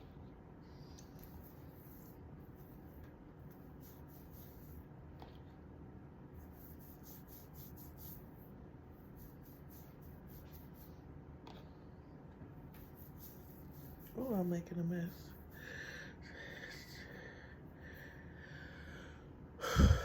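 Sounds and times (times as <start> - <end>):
scratchy rubbing of hair: 1.2 - 5.4, 6.4 - 11.0, 12.7 - 15.6.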